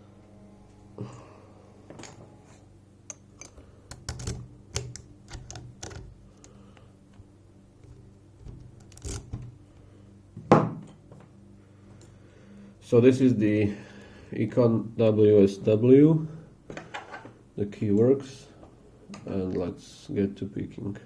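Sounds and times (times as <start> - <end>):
steady low hum: 0.0 - 21.0
lock clicking and knocking: 3.1 - 6.2, 7.9 - 9.6.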